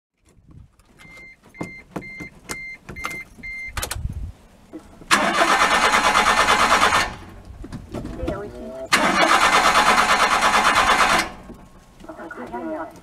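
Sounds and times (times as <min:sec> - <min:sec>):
starter motor cranking engine: 0:05.1 - 0:07.3, 0:08.9 - 0:11.5.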